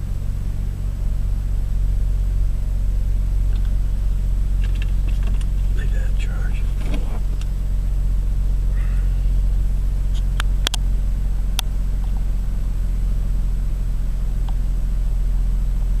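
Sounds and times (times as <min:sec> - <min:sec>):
car interior rumble while driving: 0:00.0 - 0:16.0
sharp clicks: 0:10.1 - 0:10.8.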